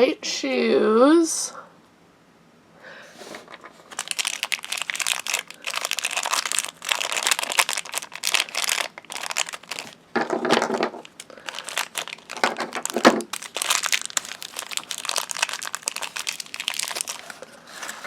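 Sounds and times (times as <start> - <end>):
plastic packaging crinkling and tearing: 3.6 - 18.0.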